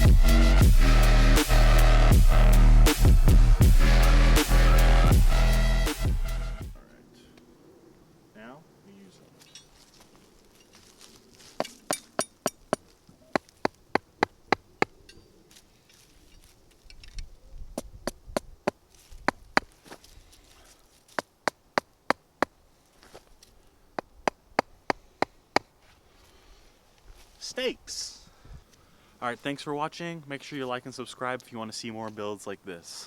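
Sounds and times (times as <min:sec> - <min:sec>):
hammer striking steel stakes: 0:11.6 - 0:15.3.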